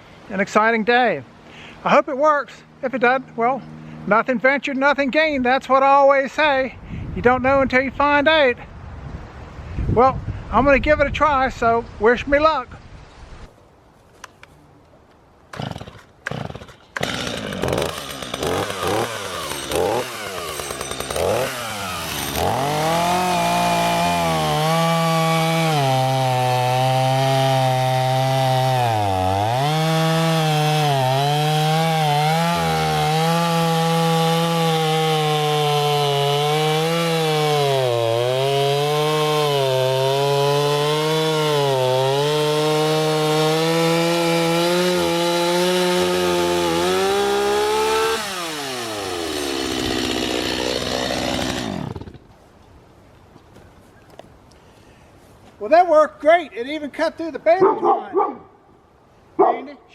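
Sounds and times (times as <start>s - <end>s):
chainsaw revving and cutting: 15.5s - 52.2s
chainsaw starter pulls: 15.6s - 22.9s, 48.9s - 52.2s.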